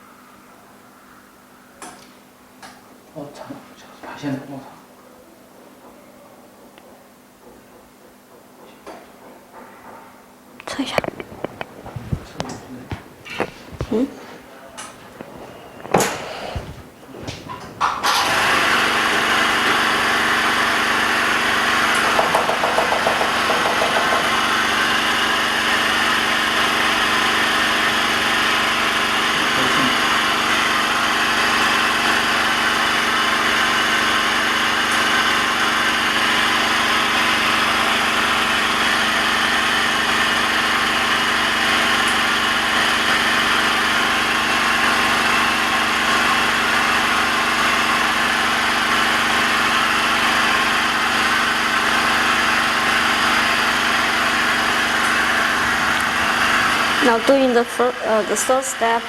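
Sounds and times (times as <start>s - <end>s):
hiss: 15.8s - 21.3s.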